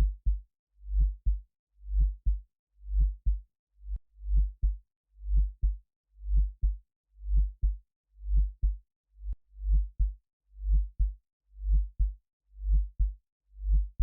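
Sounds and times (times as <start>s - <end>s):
synthesized heartbeat thumps: 9.7s - 10.1s, 10.7s - 11.1s, 11.7s - 12.1s, 12.7s - 13.1s.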